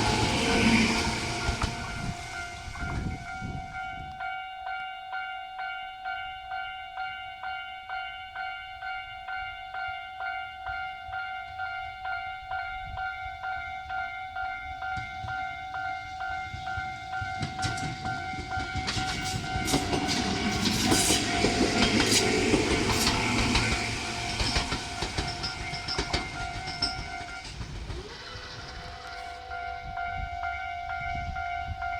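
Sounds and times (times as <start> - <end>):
train passing: 0.0 - 4.8, 9.3 - 31.9
wheels clicking over rail joints: 14.8 - 30.0.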